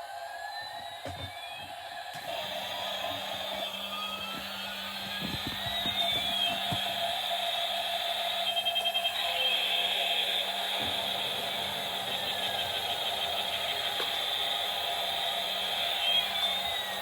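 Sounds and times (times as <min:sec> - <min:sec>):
siren-like alarm sweeps: 0:00.0 - 0:17.0
steady electronic hum: 0:02.4 - 0:17.0.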